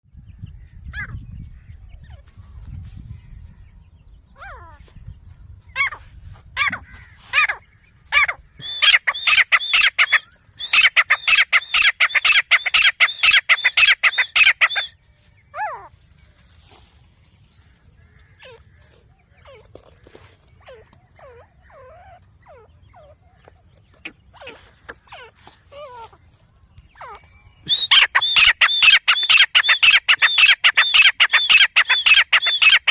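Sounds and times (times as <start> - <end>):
faint lower bird chirps: 7.4 - 17.0, 20.6 - 32.9
francolin calling shrill notes: 8.6 - 15.0, 27.7 - 32.9.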